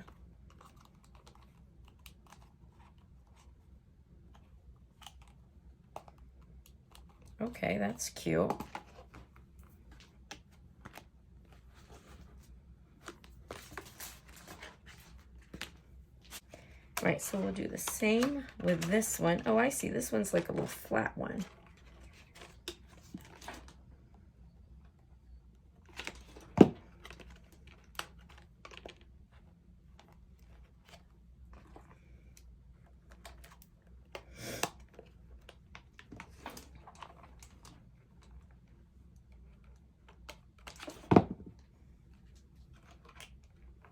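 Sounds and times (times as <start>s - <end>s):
paper rustle: 10.8s - 16.4s.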